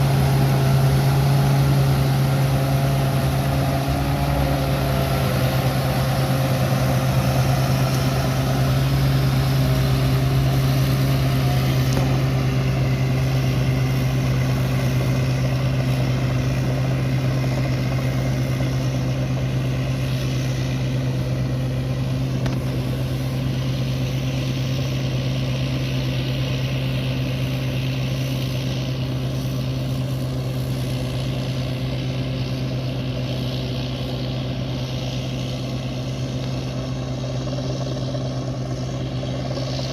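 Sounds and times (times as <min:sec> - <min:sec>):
combine harvester engine running: 0:00.0 - 0:39.9.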